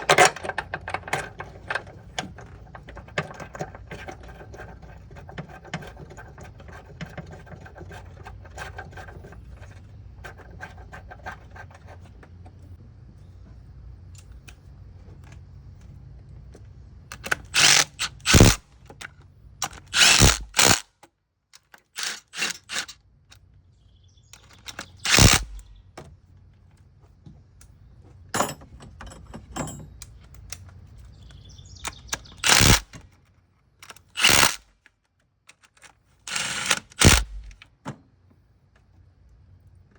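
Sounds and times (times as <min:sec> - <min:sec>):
metal clanks and knocks: 0:28.3 - 0:30.2.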